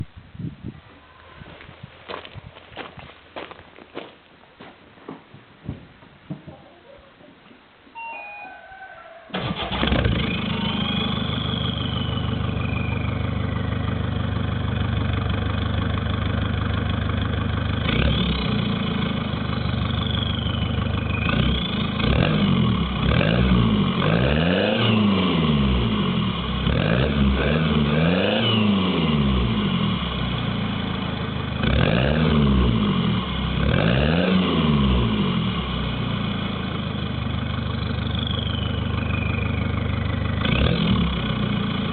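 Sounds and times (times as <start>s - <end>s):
diesel car engine starting and revving: 9.3s - 41.9s.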